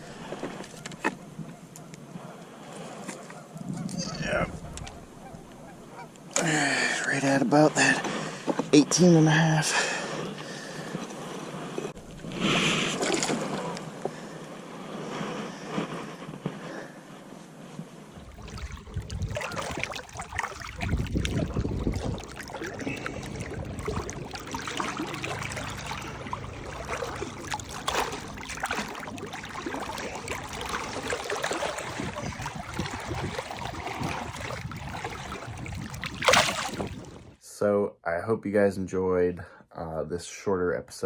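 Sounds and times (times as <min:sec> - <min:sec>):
low rumbles on microphone: 0:03.7 - 0:06.0, 0:18.1 - 0:37.4
water splashing and trickling: 0:04.0 - 0:14.2, 0:18.1 - 0:37.4.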